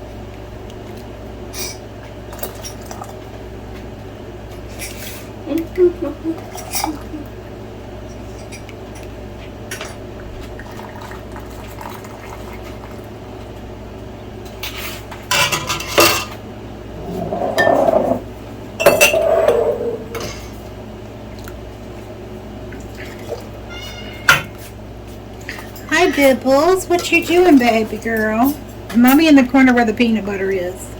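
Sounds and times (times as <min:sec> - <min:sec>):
steady low hum: 0:03.2 - 0:29.8
utensils and dishes clattering: 0:14.6 - 0:16.4, 0:17.0 - 0:20.6.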